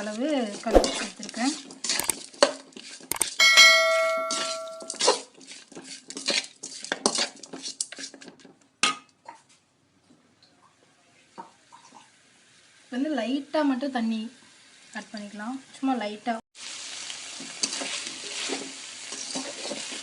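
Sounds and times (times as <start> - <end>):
ringing clang: 3.2 - 5.0.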